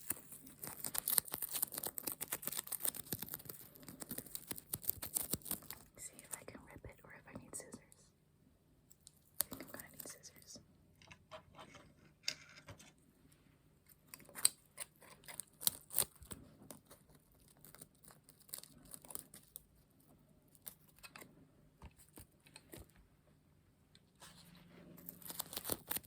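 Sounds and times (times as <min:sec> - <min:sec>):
stationery crackling and tearing: 0:00.0 - 0:06.0, 0:14.1 - 0:19.8, 0:21.8 - 0:23.0, 0:24.2 - 0:26.0.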